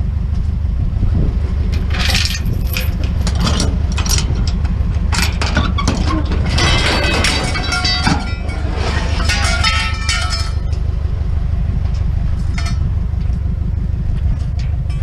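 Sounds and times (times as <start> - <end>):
truck engine rumbling: 0.0 - 15.0
scrap metal clanking: 1.7 - 11.0, 12.0 - 13.0.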